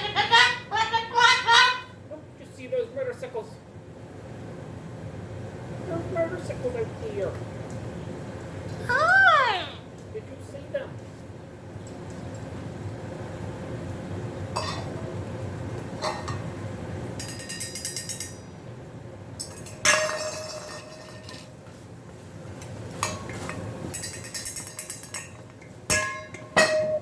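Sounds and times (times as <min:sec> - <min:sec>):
steady low hum: 0:00.0 - 0:27.0
dishes and cutlery clinking: 0:14.6 - 0:15.2, 0:16.0 - 0:16.5, 0:17.1 - 0:18.5, 0:19.4 - 0:21.7, 0:22.6 - 0:27.0.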